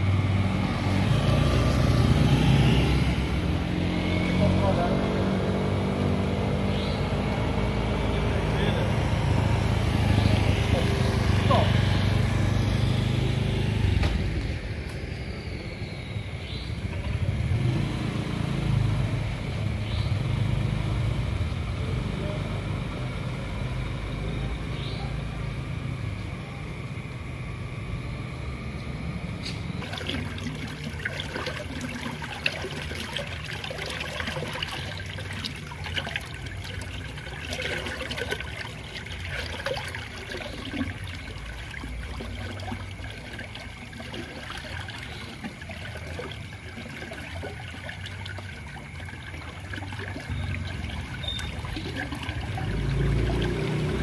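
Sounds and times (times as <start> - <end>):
water trickling and splashing: 0.0 - 21.8, 29.4 - 54.0
steady low hum: 18.2 - 54.0.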